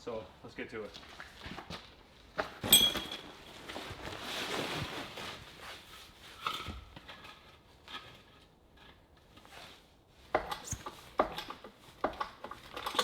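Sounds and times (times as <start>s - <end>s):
tools scraping and handling: 2.4s - 13.0s
sharp metallic clank: 2.6s - 3.2s.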